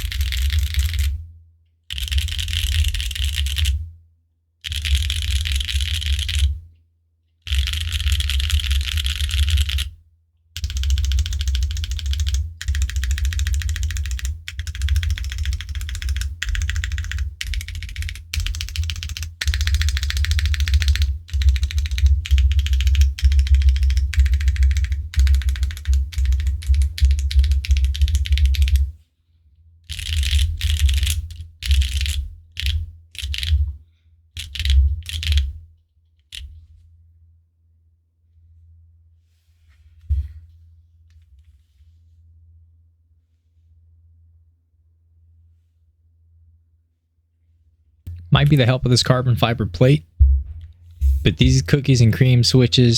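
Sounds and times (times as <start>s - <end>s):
mechanical keyboard typing: 0.0s - 1.1s, 1.9s - 3.7s, 4.7s - 6.5s, 7.5s - 9.9s, 10.6s - 28.9s, 29.9s - 33.5s, 34.4s - 35.5s.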